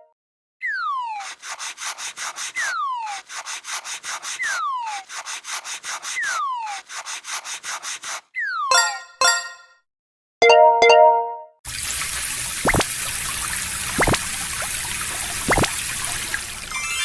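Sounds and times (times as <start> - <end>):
cartoon falling whistle: 0.6 - 1.2, 8.4 - 9.0
scratchy rubbing strokes: 1.1 - 8.3.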